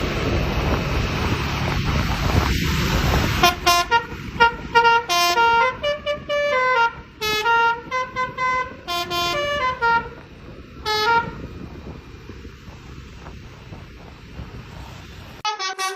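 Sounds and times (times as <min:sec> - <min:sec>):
bus engine and road noise: 0:00.0 - 0:15.9
musical air horn tune: 0:03.4 - 0:10.2, 0:10.8 - 0:11.4, 0:15.4 - 0:15.9.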